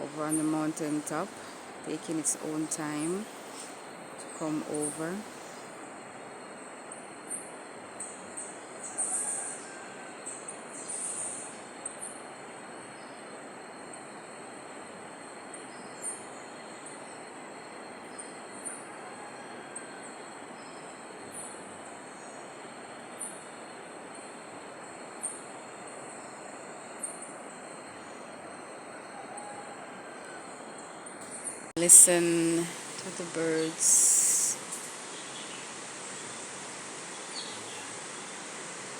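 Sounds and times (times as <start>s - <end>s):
stream water rushing: 0.0s - 5.7s, 31.8s - 38.9s.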